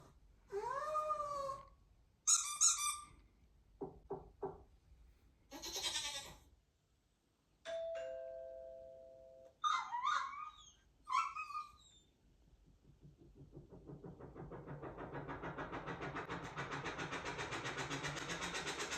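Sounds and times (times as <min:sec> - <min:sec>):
squeaky chirps: 0:02.3 - 0:03.2
ding-dong doorbell chime: 0:07.7 - 0:09.6
quick knocks: 0:12.6 - 0:18.9.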